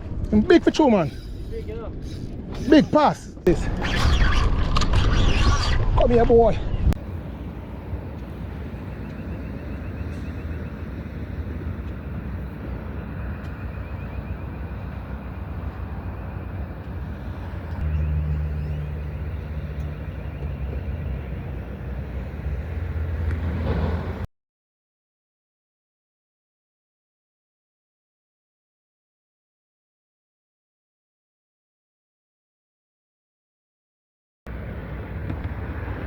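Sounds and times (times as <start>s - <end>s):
wind noise: 0.0s - 18.0s
vehicle engine rumble: 0.0s - 24.3s, 34.5s - 36.0s.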